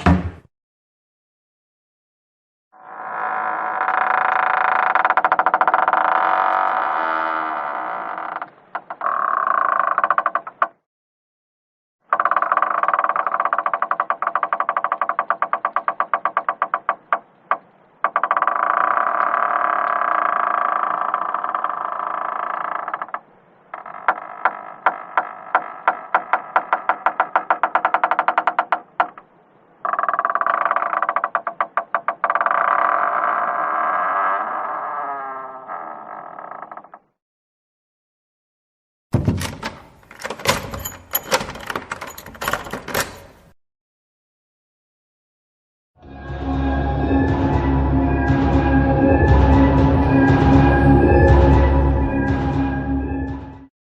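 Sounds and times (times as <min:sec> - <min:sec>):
door hinges creaking: 0:02.8 - 0:10.9, 0:12.1 - 0:37.2, 0:39.1 - 0:43.6.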